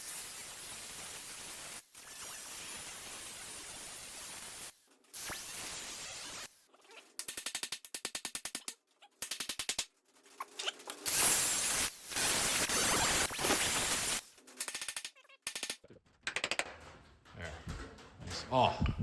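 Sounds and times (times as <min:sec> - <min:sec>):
pneumatic air hammer rattling: 0:07.1 - 0:17.0.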